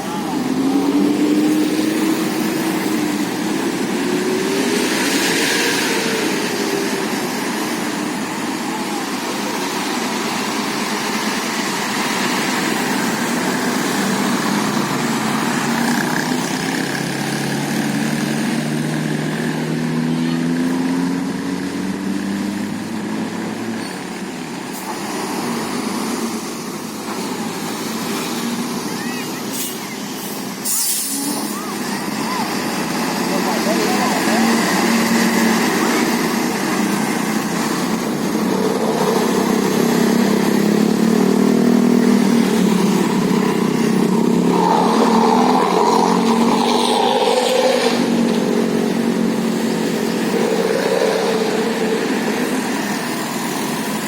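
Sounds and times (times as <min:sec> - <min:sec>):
bus engine running: 0:00.0 - 0:54.0.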